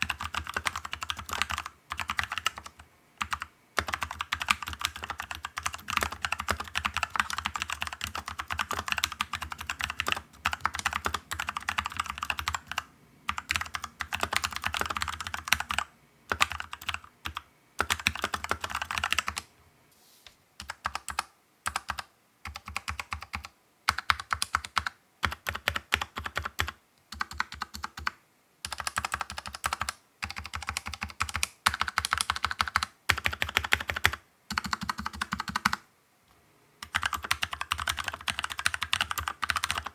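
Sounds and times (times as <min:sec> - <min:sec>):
mechanical keyboard keystroke clacks: 0:36.8 - 0:39.9.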